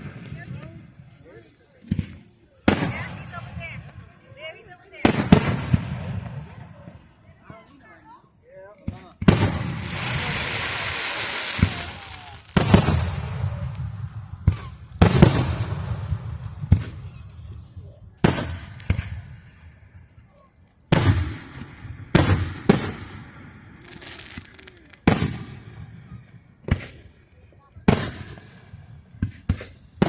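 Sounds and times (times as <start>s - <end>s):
fireworks bangs: 1.9s - 4.1s, 5.0s - 7.0s, 9.2s - 19.4s, 20.9s - 27.0s, 27.8s - 30.0s.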